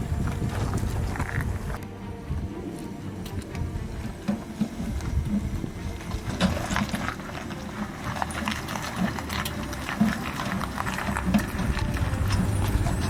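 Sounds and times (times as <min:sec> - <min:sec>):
low engine rumble: 0:00.0 - 0:13.0
tyres knocking over rough ground: 0:02.9 - 0:13.0.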